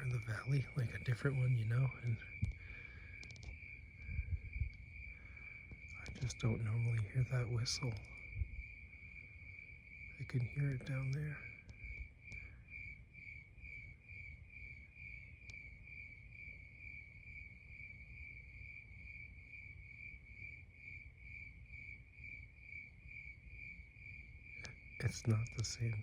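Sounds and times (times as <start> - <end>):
low background rumble: 0.0 - 13.3
cricket chirping: 0.0 - 26.0.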